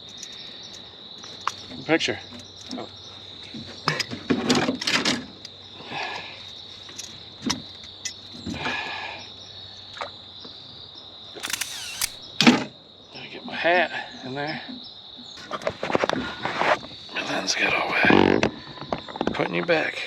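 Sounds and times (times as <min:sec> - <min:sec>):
crickets trilling: 0:00.0 - 0:04.2, 0:09.2 - 0:12.3.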